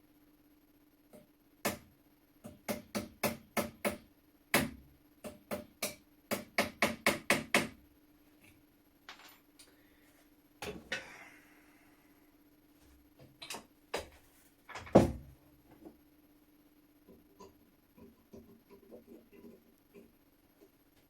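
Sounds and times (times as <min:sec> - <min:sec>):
hammer striking a pin punch: 0:01.2 - 0:07.8
handling knocks: 0:14.0 - 0:15.9.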